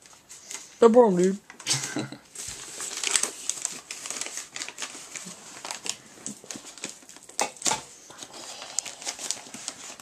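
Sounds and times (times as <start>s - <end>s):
packaging clicks and rustling: 2.4s - 10.0s.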